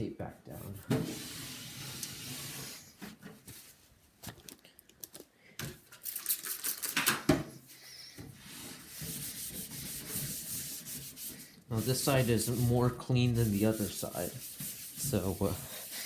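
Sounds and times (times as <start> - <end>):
paper towel rustling: 0.5 - 4.4, 8.4 - 16.0.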